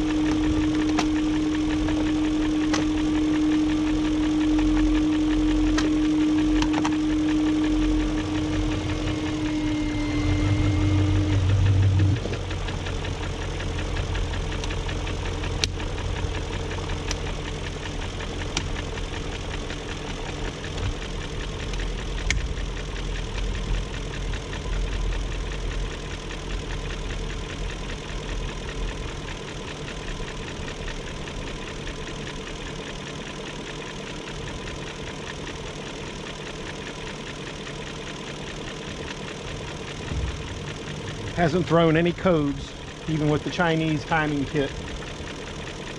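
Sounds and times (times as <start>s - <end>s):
car engine idling: 0.0s - 45.9s.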